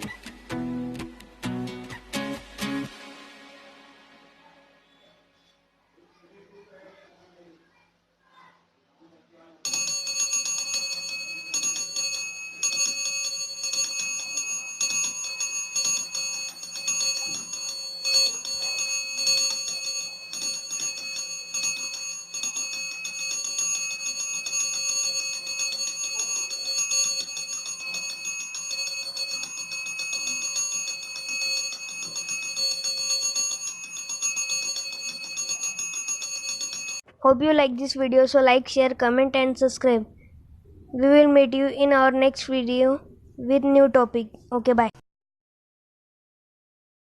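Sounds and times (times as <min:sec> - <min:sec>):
motorized bell rattling and ringing: 0:09.7 - 0:37.0.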